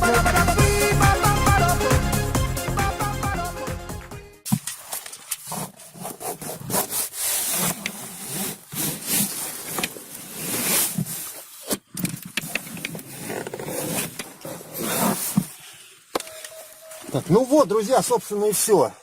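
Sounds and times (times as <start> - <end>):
putty knife scraping and rubbing: 4.6 - 17.1.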